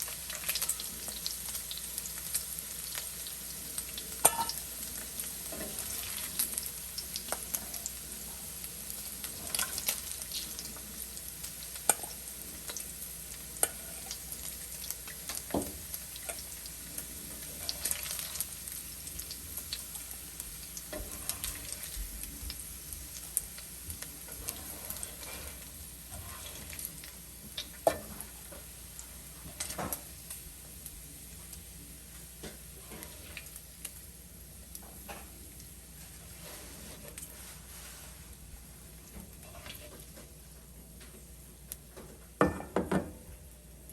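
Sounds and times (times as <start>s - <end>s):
meat sizzling in hot oil: 0.0s - 40.2s.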